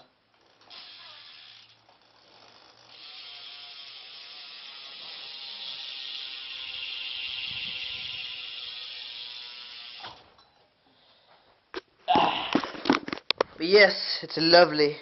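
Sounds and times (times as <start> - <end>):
bicycle hub freewheel buzzing: 0.0 - 10.5.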